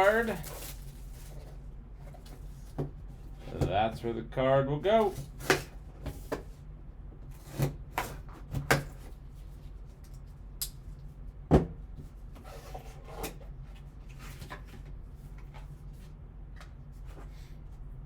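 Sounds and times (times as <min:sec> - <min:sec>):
card packaging rustling: 0:00.0 - 0:01.6.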